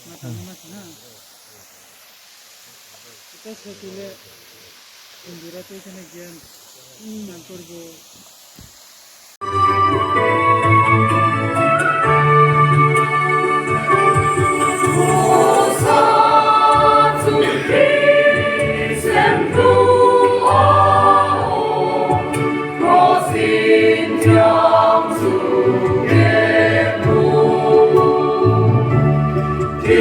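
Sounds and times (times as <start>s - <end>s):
steady musical accompaniment: 9.4s - 30.0s
choir singing gospel song: 13.0s - 30.0s.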